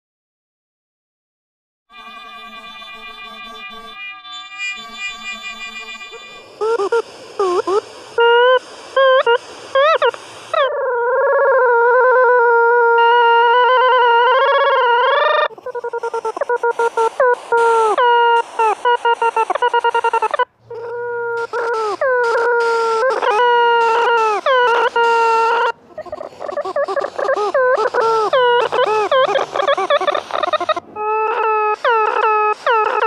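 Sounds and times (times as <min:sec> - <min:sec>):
synthesized wavering tone and blips: 0:01.9 - 0:10.0.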